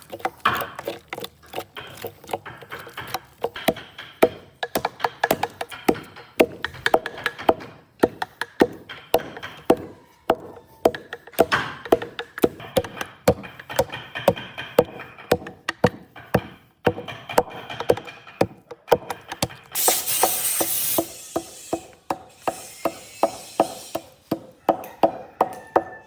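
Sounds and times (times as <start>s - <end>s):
sharp knocks on wood: 2.7s - 19.6s.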